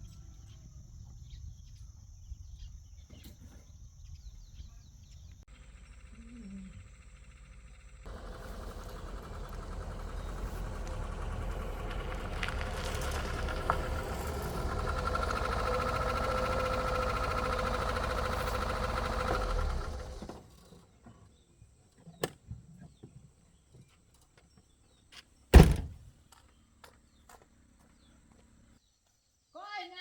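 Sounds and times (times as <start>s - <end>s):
vehicle engine running: 5.4s - 20.8s
loud thunk: 25.6s - 26.1s.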